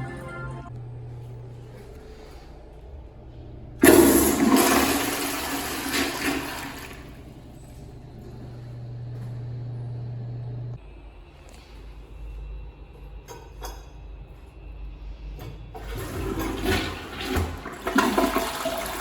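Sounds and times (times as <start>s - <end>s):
toilet flushing: 3.8s - 9.2s, 15.7s - 19.0s.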